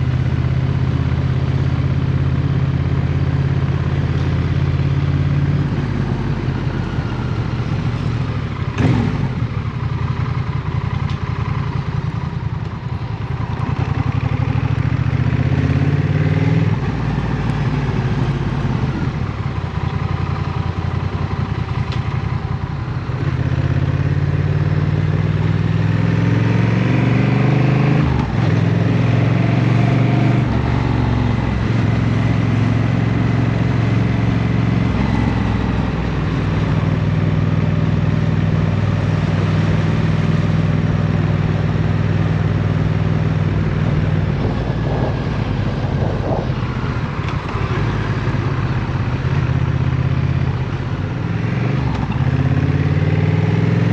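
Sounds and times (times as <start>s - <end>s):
motorcycle engine accelerating: 0.0s - 53.9s.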